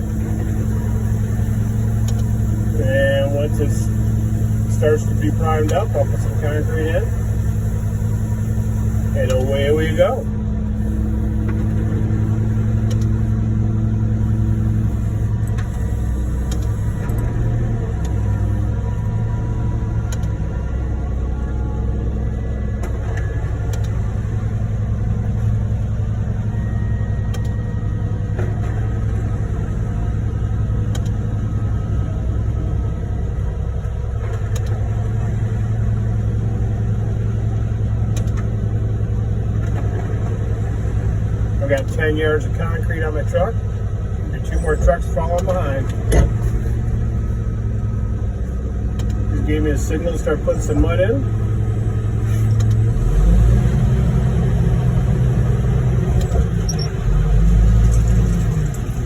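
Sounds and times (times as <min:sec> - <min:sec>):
diesel truck engines running: 0:00.0 - 0:59.0.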